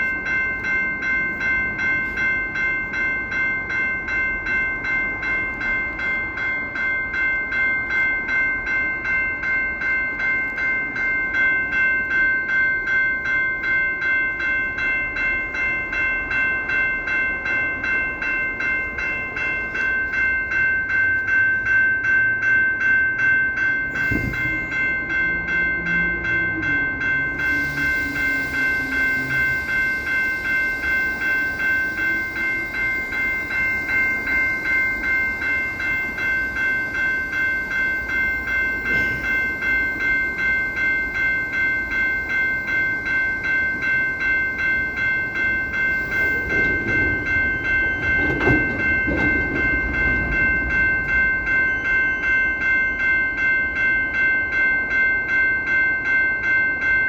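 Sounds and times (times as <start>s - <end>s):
locomotive air horn: 23.9s - 24.7s, 27.2s - 36.1s.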